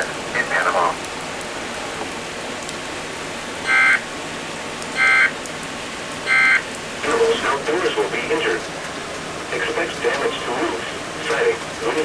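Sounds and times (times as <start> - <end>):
steady radio hiss: 0.0 - 2.2, 6.3 - 12.0
digital data tone squawks: 3.7 - 4.0, 5.0 - 5.3, 6.3 - 6.6.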